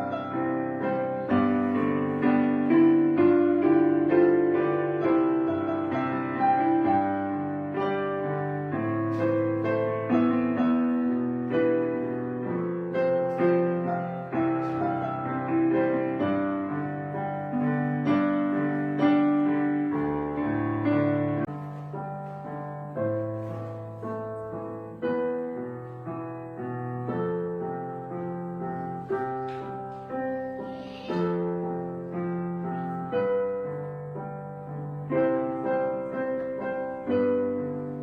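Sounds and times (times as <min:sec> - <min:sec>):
gentle piano music: 0:00.0 - 0:38.0.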